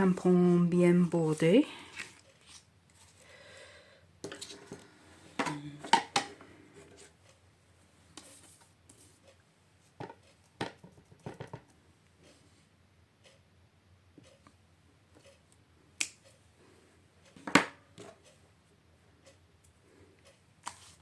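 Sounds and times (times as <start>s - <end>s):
taps and clacks on table: 10.0s - 11.7s.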